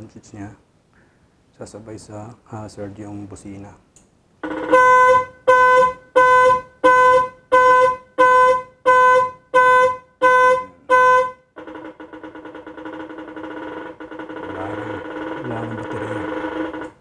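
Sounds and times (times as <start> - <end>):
low continuous buzz: 0.0 - 17.0
horn beeping: 4.4 - 17.0.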